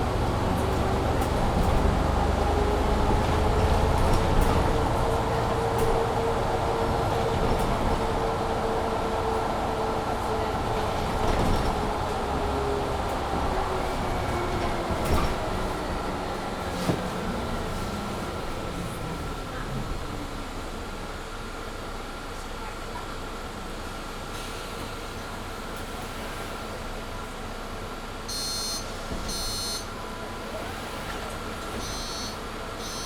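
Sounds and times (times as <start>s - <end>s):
bus drivetrain whine: 0.0s - 33.0s
engine and road rumble: 0.0s - 33.0s.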